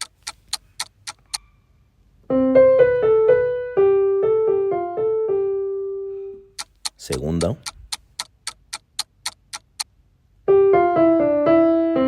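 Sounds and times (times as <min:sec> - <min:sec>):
piano melody: 0:02.2 - 0:06.6, 0:10.4 - 0:12.0.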